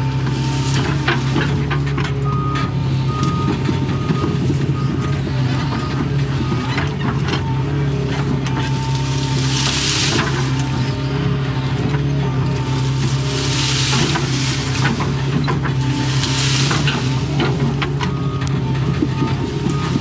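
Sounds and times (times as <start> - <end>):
branches cracking: 0.0 - 2.1, 3.1 - 20.0
excavator diesel engine running: 0.0 - 20.0.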